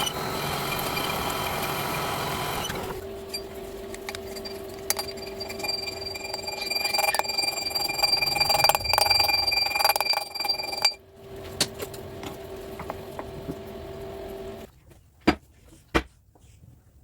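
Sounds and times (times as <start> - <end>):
electric motor whining: 0.0 - 9.5.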